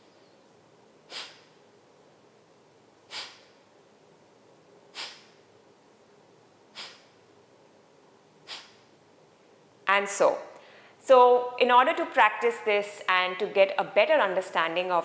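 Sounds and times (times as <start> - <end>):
soft inhales: 1.0 - 1.6, 3.0 - 3.7, 4.9 - 5.5, 6.7 - 7.2, 8.4 - 8.9, 10.6 - 11.0
woman's forceful nasal exhales: 1.0 - 1.6, 3.0 - 3.7, 4.9 - 5.5, 6.7 - 7.2, 8.4 - 8.9.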